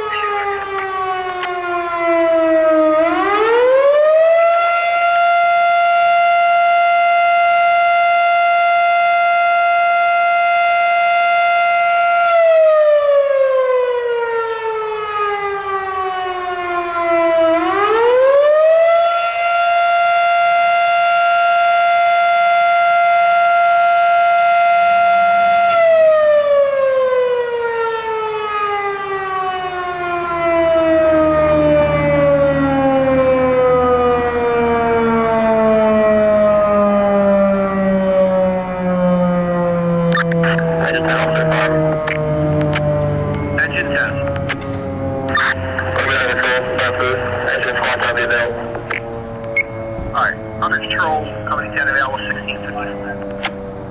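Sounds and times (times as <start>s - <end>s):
fire siren wailing: 0.0s - 53.9s.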